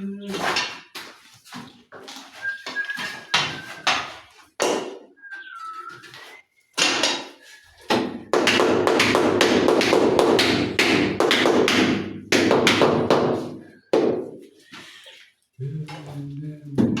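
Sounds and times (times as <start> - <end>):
rapid tapping and knocking: 7.9 - 13.3.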